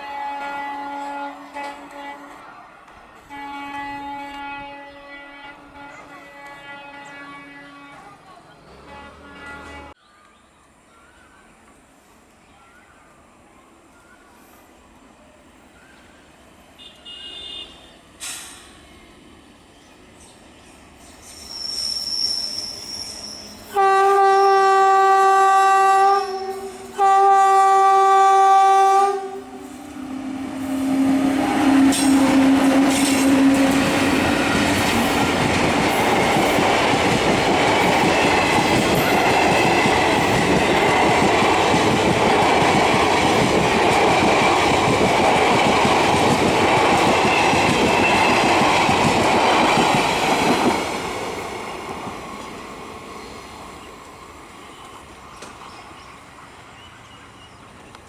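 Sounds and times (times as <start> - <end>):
locomotive horn blasts: 0.0 - 2.4, 3.2 - 8.2, 8.8 - 10.0, 16.8 - 18.0, 23.7 - 34.5
clickety-clack of coaches: 31.9 - 50.8, 54.8 - 55.7.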